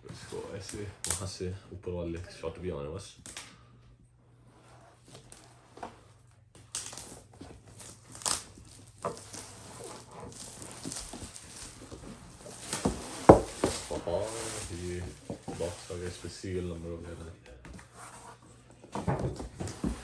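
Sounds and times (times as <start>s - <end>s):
packaging rustling and crinkling: 6.5s - 16.6s.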